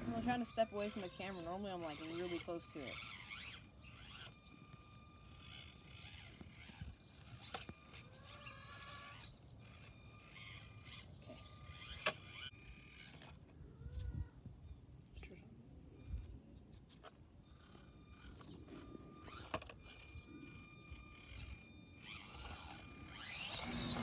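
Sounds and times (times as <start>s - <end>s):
small electric motor whining: 0.0s - 24.0s
tires scraping over rock: 22.0s - 24.0s.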